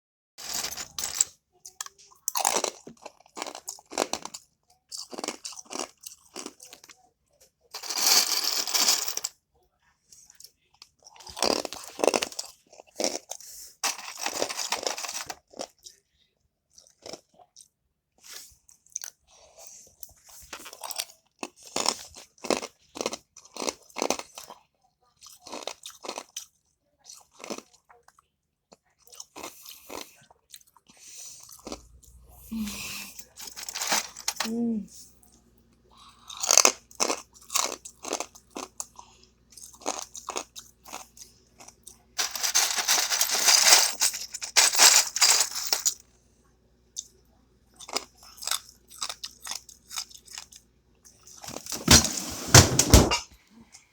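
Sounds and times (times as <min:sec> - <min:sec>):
ice cubes being chewed: 0:00.4 - 0:07.0, 0:10.1 - 0:16.1, 0:16.7 - 0:28.2, 0:33.2 - 0:34.5, 0:36.2 - 0:46.0, 0:47.8 - 0:51.8.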